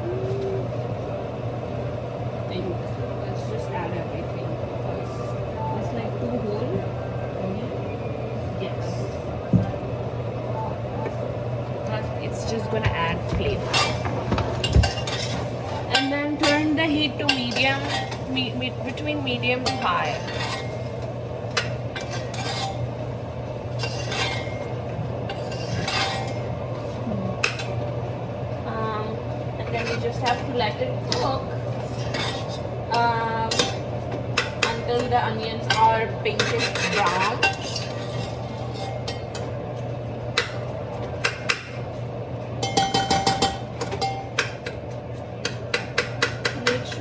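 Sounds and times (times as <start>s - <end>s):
steady low hum: 0.0s - 47.0s
utensil scraping pan: 13.2s - 21.0s, 21.6s - 22.9s, 25.3s - 26.5s, 29.6s - 32.7s, 34.4s - 39.4s
utensil stirring onions in oil: 14.8s - 23.0s.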